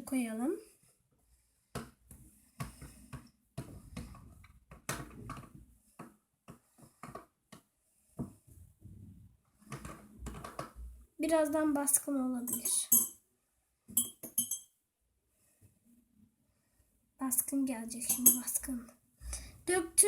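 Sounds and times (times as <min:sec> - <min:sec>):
spoon and containers knocking and scraping: 0:12.4 - 0:13.2, 0:13.9 - 0:14.7, 0:18.0 - 0:18.6.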